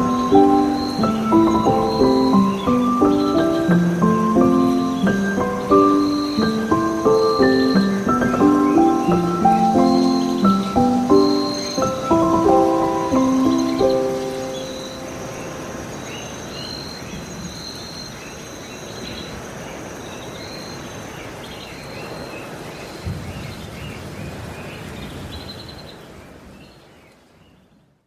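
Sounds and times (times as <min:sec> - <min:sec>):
steady high insect-like tone: 0:00.0 - 0:19.6
small birds chirping: 0:00.0 - 0:28.0.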